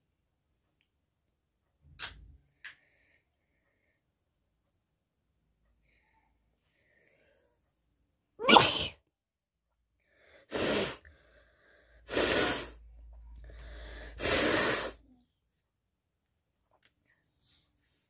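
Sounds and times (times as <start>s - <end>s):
person sneezing: 8.4s - 9.0s.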